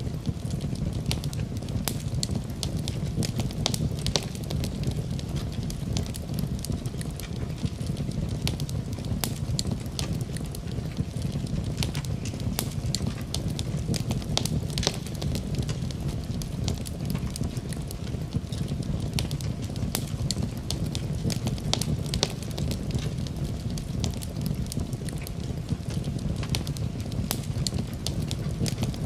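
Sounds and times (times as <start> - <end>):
fire crackling and popping: 0.0 - 29.0
wood fire rumbling: 0.0 - 29.0.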